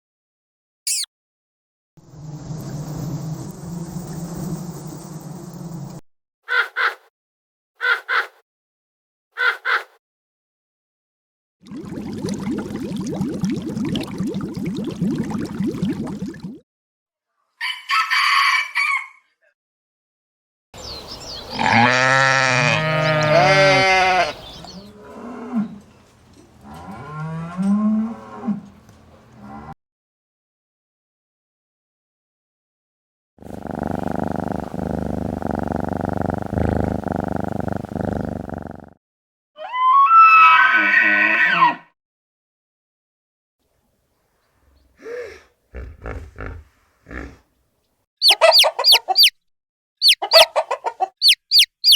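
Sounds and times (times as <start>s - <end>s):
animal calls dropping in pitch: 0.9s - 1.1s, 48.2s - 49.3s, 51.2s - 51.9s.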